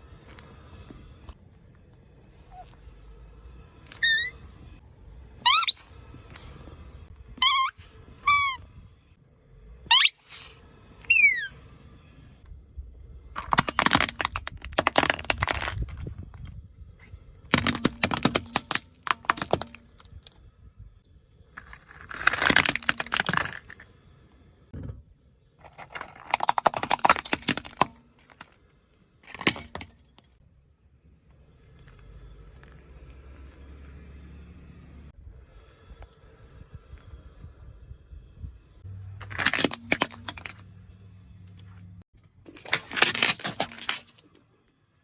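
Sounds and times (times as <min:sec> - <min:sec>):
short falling squeak: 0:03.9 - 0:04.8, 0:05.4 - 0:06.0, 0:07.4 - 0:08.7, 0:09.9 - 0:11.6
objects crushed under car tyre: 0:13.4 - 0:16.4, 0:17.5 - 0:20.3, 0:21.6 - 0:23.9, 0:25.6 - 0:28.6, 0:39.2 - 0:40.6, 0:42.5 - 0:44.3.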